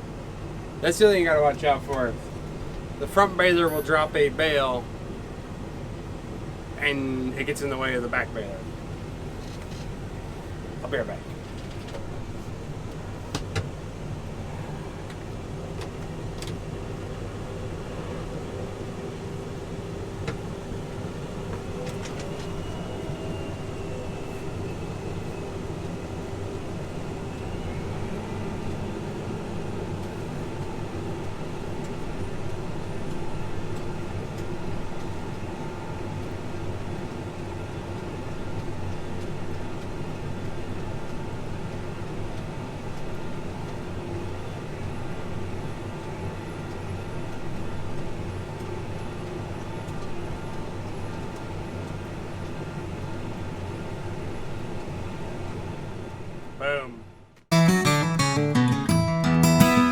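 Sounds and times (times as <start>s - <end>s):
tractor diesel engine running: 0.0s - 39.8s.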